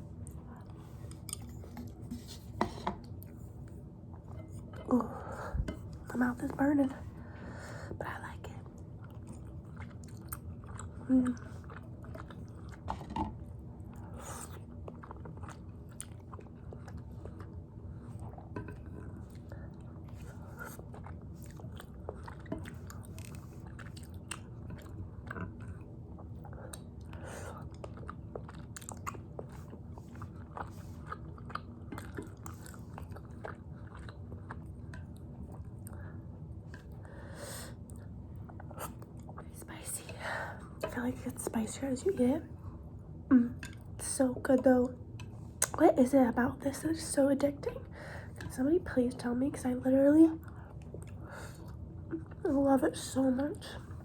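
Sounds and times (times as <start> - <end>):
steady low hum: 0.0 - 54.0
wet chewing and mouth clicks: 8.7 - 37.1, 37.8 - 39.5, 45.1 - 45.8.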